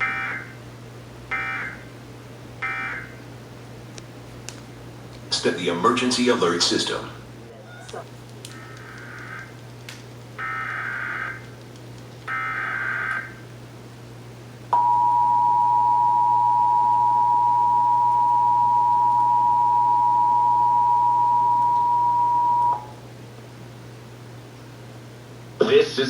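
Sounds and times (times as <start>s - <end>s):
two-tone attention signal: 14.8s - 22.9s.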